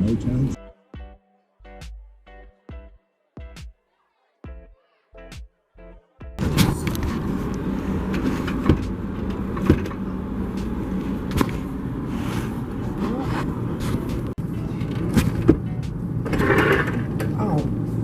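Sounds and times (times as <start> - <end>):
road noise: 0.0 - 0.6, 6.4 - 18.0
car engine running: 6.4 - 18.0.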